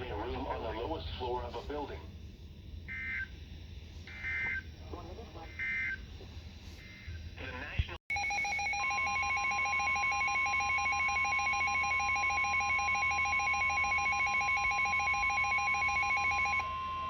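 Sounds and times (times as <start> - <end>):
steady high attention tone: 8.1 - 17.0.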